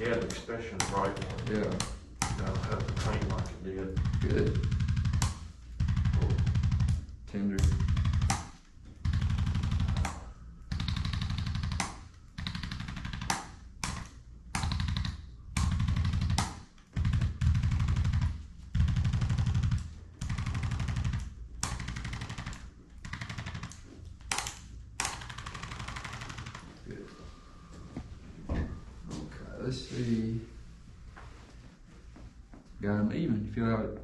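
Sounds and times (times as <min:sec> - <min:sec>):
rapid tapping adjusting instrument: 0:00.0 - 0:26.7.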